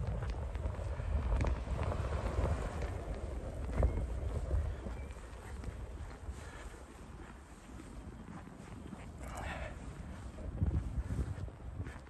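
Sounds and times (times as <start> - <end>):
wind gusting against microphone: 0.0 - 12.0.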